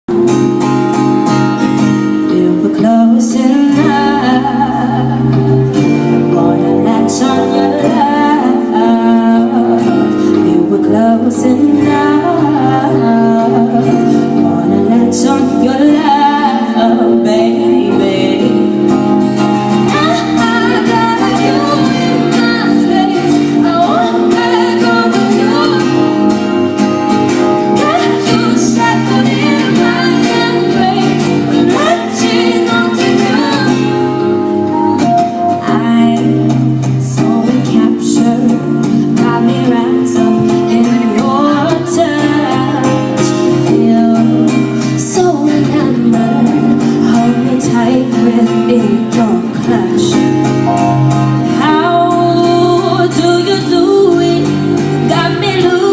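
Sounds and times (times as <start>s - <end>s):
instrumental backing music: 0.1s - 55.9s
woman singing: 1.8s - 55.9s.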